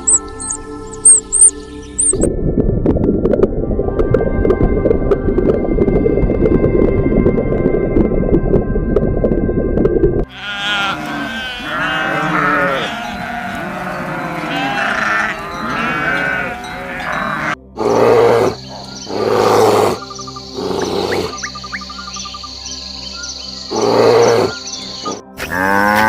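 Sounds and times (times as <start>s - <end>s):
sheep bleating: 10.3s - 17.6s
harsh animal calls: 10.3s - 21.7s, 23.7s - 26.0s.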